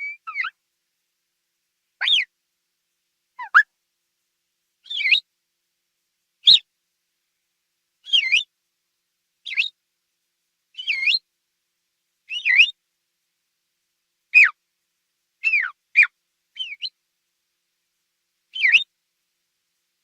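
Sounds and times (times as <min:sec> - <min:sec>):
quail whistled calls: 0:00.0 - 0:00.6, 0:02.0 - 0:02.3, 0:03.4 - 0:03.7, 0:04.8 - 0:05.2, 0:06.4 - 0:06.6, 0:08.0 - 0:08.5, 0:09.5 - 0:09.7, 0:10.8 - 0:11.2, 0:12.3 - 0:12.8, 0:14.3 - 0:14.6, 0:15.4 - 0:17.0, 0:18.5 - 0:18.9.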